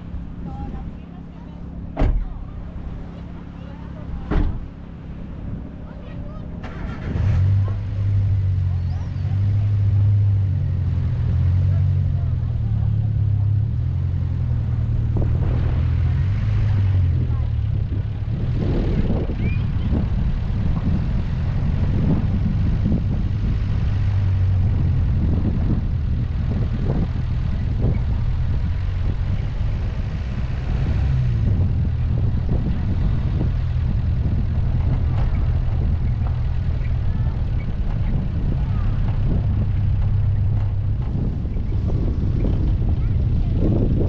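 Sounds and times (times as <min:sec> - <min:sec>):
car engine and road drone: 0:00.0 - 0:44.0
knocks from road bumps: 0:01.9 - 0:02.4.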